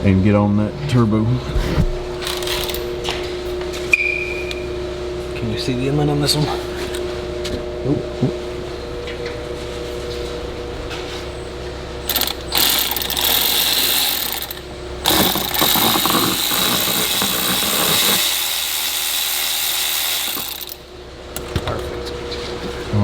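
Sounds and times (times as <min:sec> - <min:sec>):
ratchet wrench clicking rapidly: 0:02.2 - 0:02.8, 0:12.1 - 0:20.8.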